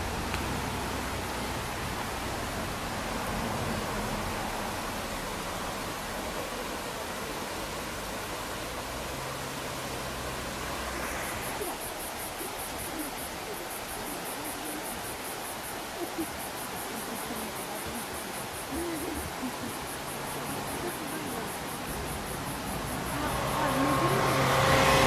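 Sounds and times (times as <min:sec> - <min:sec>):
stream water rushing: 0:00.0 - 0:25.0
insect chirring: 0:09.0 - 0:25.0.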